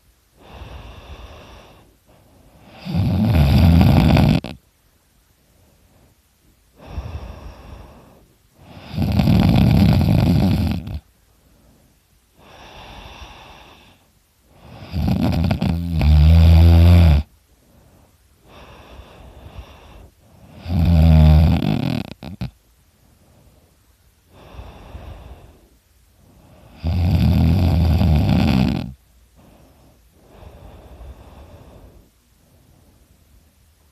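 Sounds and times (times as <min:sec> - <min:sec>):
breathing: 0:00.4 - 0:03.0, 0:05.4 - 0:09.0, 0:11.2 - 0:15.0, 0:17.4 - 0:20.8, 0:22.9 - 0:27.1, 0:29.0 - 0:33.5
man snoring loudly: 0:02.6 - 0:04.6, 0:08.6 - 0:11.0, 0:14.6 - 0:17.3, 0:20.5 - 0:22.5, 0:26.7 - 0:29.0.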